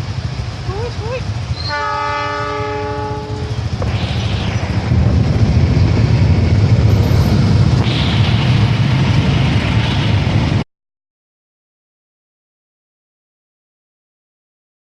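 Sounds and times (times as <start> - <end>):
train wheels rumbling on track: 0.0 - 10.6
train horn: 1.6 - 3.6.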